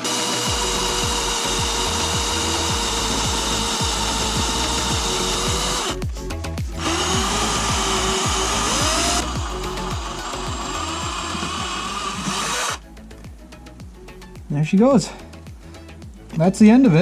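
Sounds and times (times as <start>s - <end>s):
cordless drill running: 0.0s - 6.0s, 6.8s - 12.8s.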